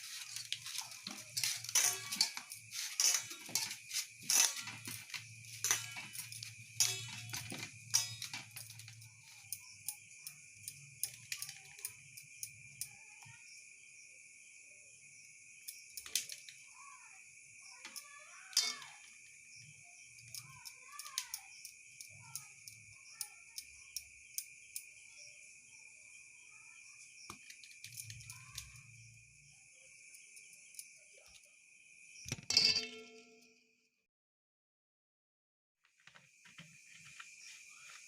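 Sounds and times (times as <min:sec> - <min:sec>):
crickets chirring: 0:00.0 - 0:33.7, 0:35.9 - 0:38.0.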